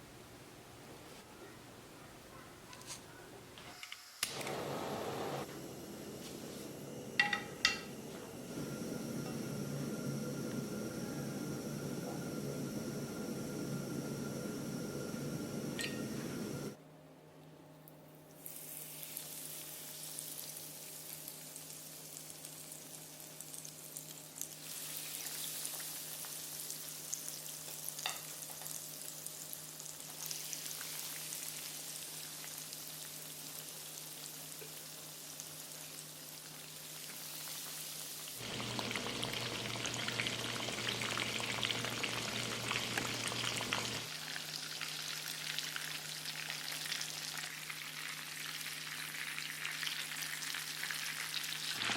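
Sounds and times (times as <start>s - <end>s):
food sizzling in hot oil: 18.4s - 51.9s.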